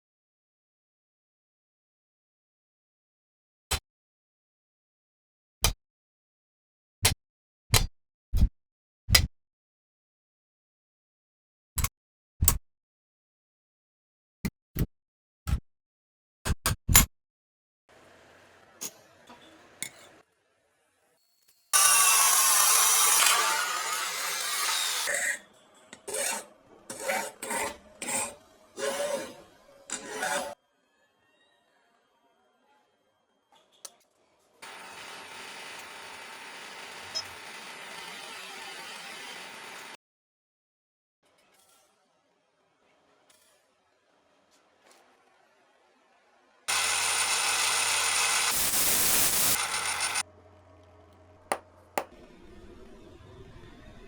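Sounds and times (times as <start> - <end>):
metalworking tool hissing: 46.7 - 50.2.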